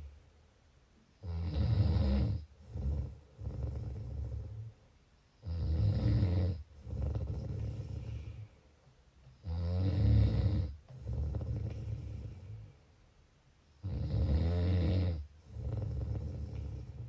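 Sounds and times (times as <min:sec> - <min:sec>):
quiet breathing: 0:01.1 - 0:17.0
rattling snore: 0:01.3 - 0:04.7, 0:05.4 - 0:08.4, 0:09.4 - 0:12.4, 0:13.8 - 0:17.0.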